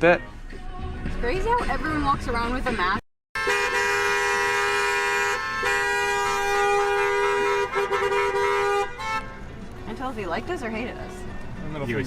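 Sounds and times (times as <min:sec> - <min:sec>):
vehicle horns honking: 0:03.4 - 0:09.6.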